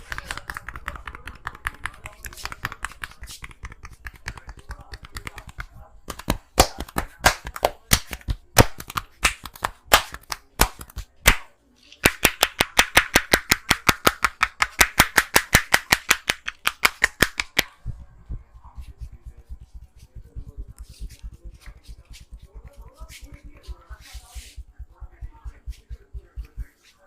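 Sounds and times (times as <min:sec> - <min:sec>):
hands slapping in massage: 0:00.0 - 0:17.8, 0:18.6 - 0:26.8.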